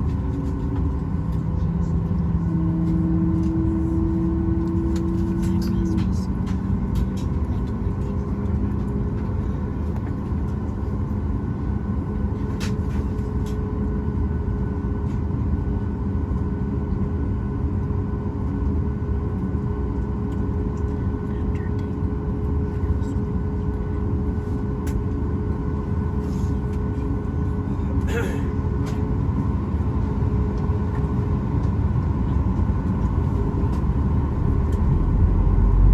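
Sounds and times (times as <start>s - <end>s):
airplane cabin rumble and hum: 0.0s - 35.9s.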